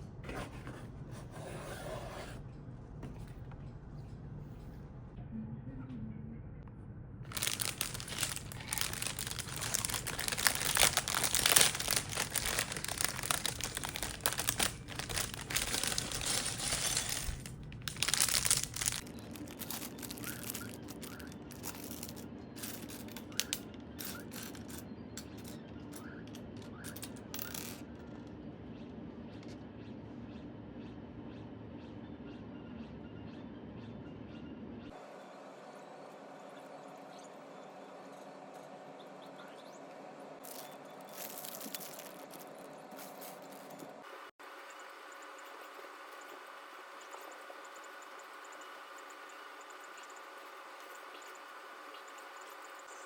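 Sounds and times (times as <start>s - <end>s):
plastic packaging crinkling: 7.3s - 24.8s, 40.4s - 44.0s.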